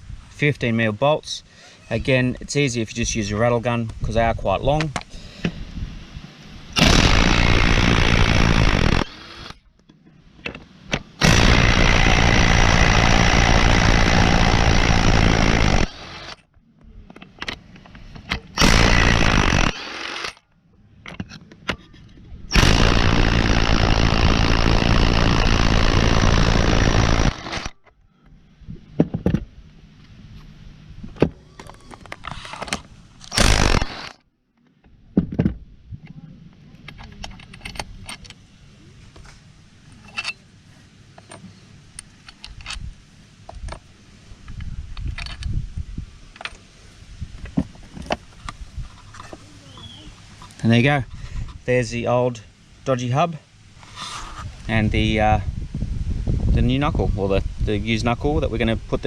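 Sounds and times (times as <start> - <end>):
impact wrench undoing bolts: 17.1 - 20.4, 31.1 - 34.2.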